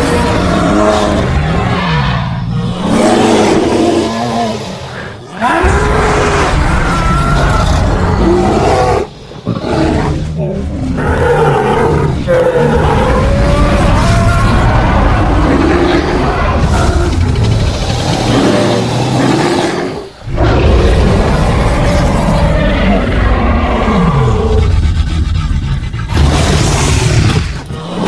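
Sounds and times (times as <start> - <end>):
creature roars and growls: 0.0 - 28.0.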